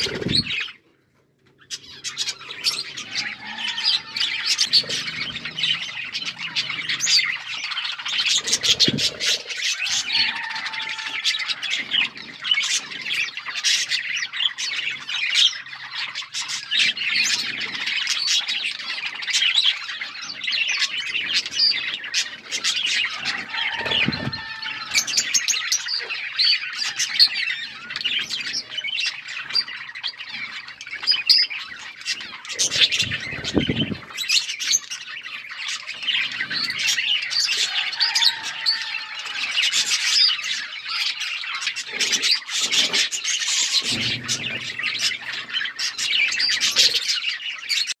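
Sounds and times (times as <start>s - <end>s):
budgerigars chattering and squawking: 0.0s - 48.0s.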